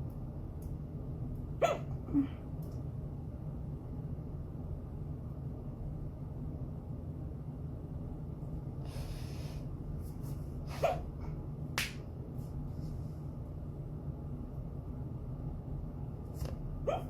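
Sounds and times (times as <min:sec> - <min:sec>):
woman hiccuping: 0:01.6 - 0:02.3.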